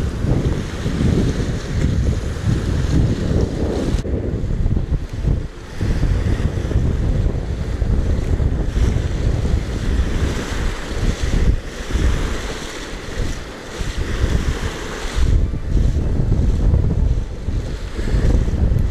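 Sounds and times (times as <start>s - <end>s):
waves washing and splashing: 0.0s - 18.9s
wind buffeting microphone: 0.0s - 18.9s.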